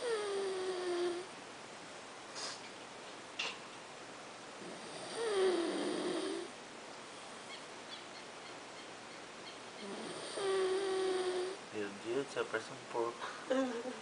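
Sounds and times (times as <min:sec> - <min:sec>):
man snoring: 0:00.0 - 0:01.3, 0:04.6 - 0:06.5, 0:09.8 - 0:11.6.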